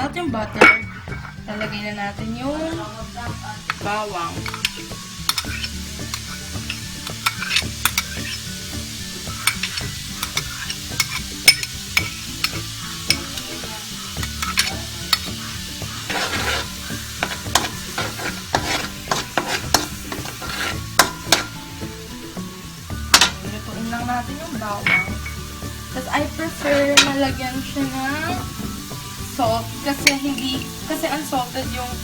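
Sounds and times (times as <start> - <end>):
garlic sizzling in butter: 0.3 - 32.0
utensil clicking against pan: 3.6 - 21.6, 23.1 - 23.5, 26.3 - 28.0, 29.9 - 31.2.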